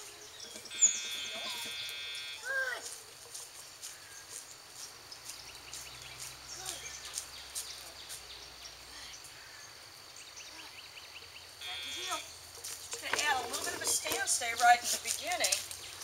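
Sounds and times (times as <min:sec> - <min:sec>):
arched calls: 0:00.6 - 0:02.5, 0:11.6 - 0:12.4.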